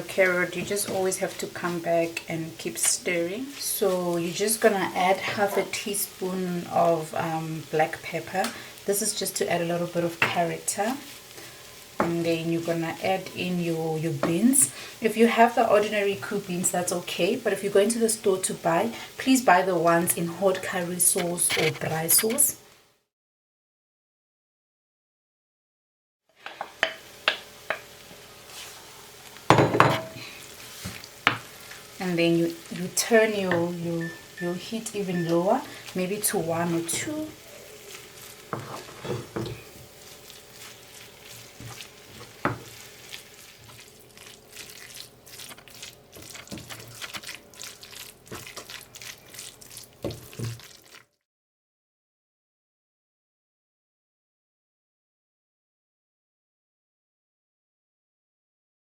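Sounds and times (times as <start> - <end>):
food sizzling and bubbling in pot: 0.0 - 22.8, 26.4 - 51.2
utensil scraping a pot: 21.0 - 22.6, 35.2 - 51.0.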